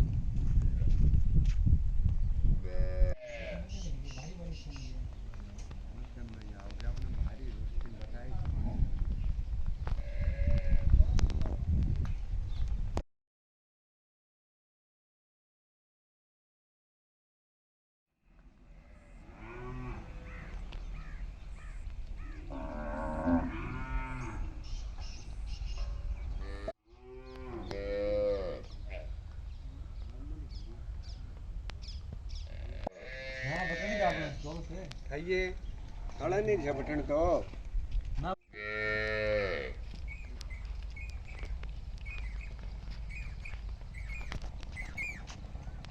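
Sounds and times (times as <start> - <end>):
small birds chirping: 3.3 - 6.6, 20.2 - 22.6, 24.1 - 26.6, 28.6 - 32.8, 40.0 - 45.9
cows mooing: 18.7 - 20.6, 22.4 - 24.6, 26.4 - 29.1, 32.5 - 34.3.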